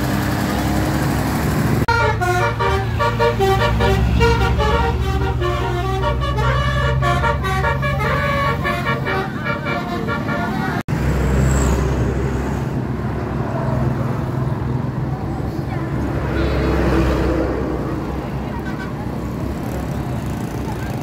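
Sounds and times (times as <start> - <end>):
bus engine drone: 0.0 - 21.0
multi-tone musical horn: 1.9 - 10.8.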